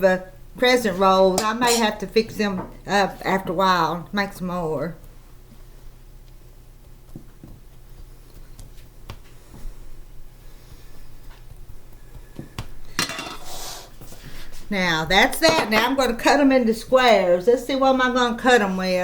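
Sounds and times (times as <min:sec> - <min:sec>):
spoon clinking and scraping dishes: 0:01.4 - 0:02.0, 0:13.0 - 0:13.5.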